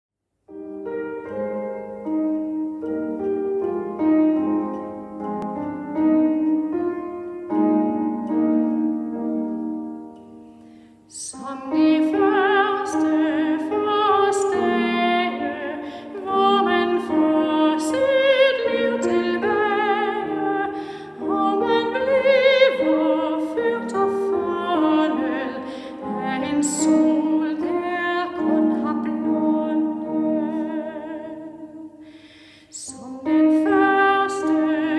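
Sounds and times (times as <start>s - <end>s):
soprano singing with vibrato: 11.1s - 34.9s.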